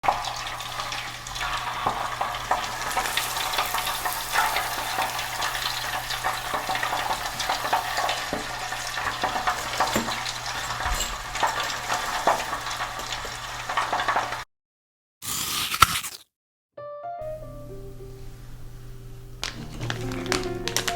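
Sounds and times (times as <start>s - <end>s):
food deep-frying in oil: 0.0s - 14.5s.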